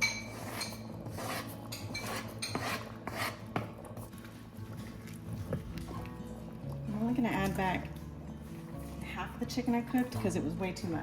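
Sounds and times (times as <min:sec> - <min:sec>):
metal utensil scraping soup pot: 0:00.0 - 0:03.6.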